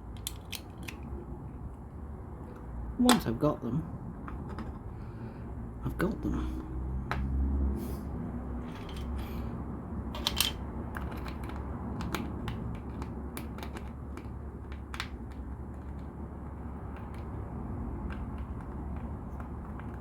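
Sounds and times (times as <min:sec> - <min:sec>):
plastic bricks clicking together: 0:00.1 - 0:01.1, 0:10.2 - 0:16.1.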